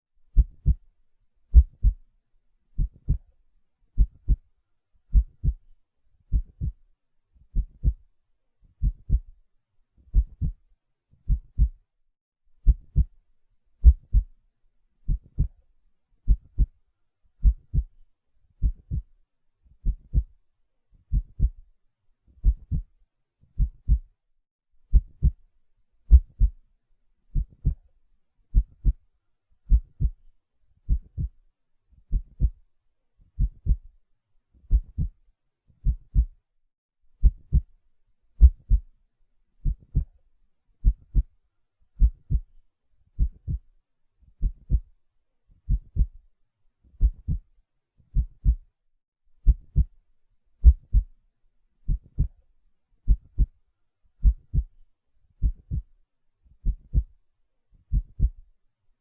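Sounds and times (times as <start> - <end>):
heartbeat thumps: 0.4 - 0.8, 1.5 - 2.0, 2.8 - 3.3, 5.1 - 5.6, 6.3 - 6.8, 7.6 - 8.0, 8.8 - 9.3, 10.1 - 10.6, 11.3 - 11.8, 12.6 - 13.1, 13.8 - 14.3, 15.1 - 15.6, 16.3 - 16.7, 17.4 - 17.9, 18.6 - 19.1, 19.8 - 20.3, 21.1 - 21.6, 22.4 - 22.8, 23.6 - 24.1, 24.9 - 25.4, 26.1 - 26.6, 27.4 - 27.8, 29.7 - 30.2, 30.9 - 31.3, 32.1 - 32.6, 33.4 - 33.9, 34.7 - 35.1, 35.8 - 36.3, 38.4 - 38.8, 39.6 - 40.1, 40.8 - 41.2, 42.0 - 42.5, 43.2 - 43.6, 44.4 - 44.8, 45.7 - 46.1, 47.0 - 47.4, 48.2 - 48.6, 49.4 - 49.9, 50.6 - 51.1, 51.9 - 52.3, 53.1 - 53.5, 54.2 - 54.7, 55.4 - 55.9, 56.6 - 57.1, 57.9 - 58.4.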